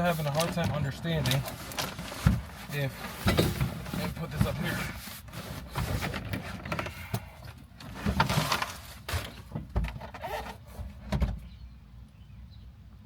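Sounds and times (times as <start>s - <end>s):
metal bar rustling and scraping: 0.0s - 7.2s.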